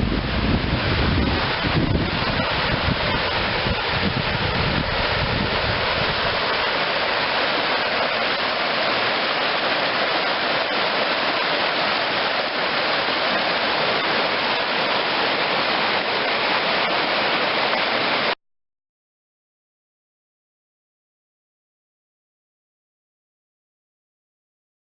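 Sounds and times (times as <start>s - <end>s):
wind buffeting microphone: 0.0s - 7.1s
waterfall rushing: 0.0s - 18.4s.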